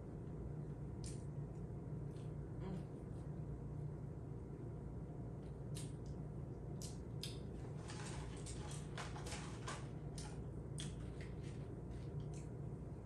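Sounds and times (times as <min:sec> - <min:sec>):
low room hum: 0:00.0 - 0:13.0
chewing and food handling clicks: 0:05.4 - 0:07.8, 0:08.4 - 0:12.6.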